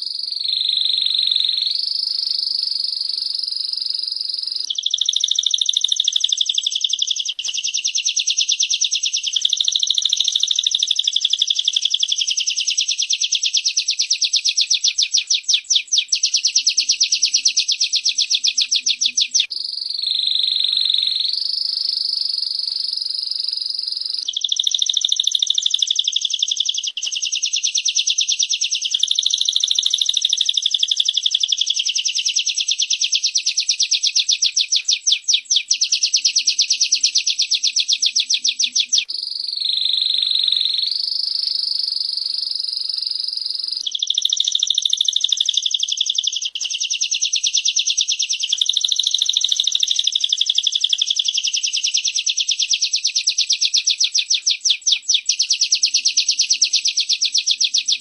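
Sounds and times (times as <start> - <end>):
rapid bird trill: 0.0 - 58.0.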